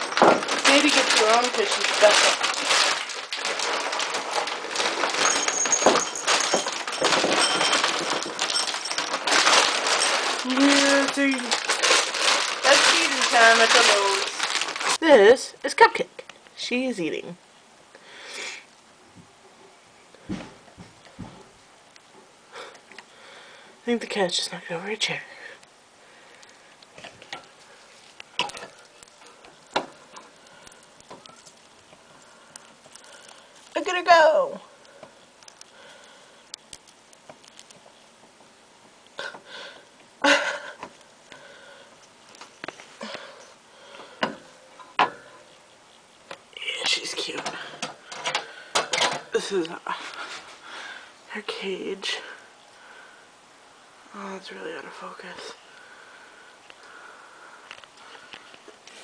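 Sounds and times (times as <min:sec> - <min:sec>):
food and bowls rattling: 0:00.0 - 0:15.0.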